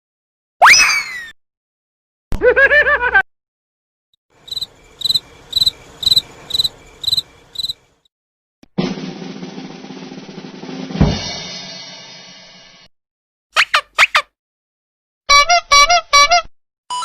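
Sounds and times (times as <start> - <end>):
cricket chirping: 4.4 - 8.1
snare drum roll: 8.8 - 12.9.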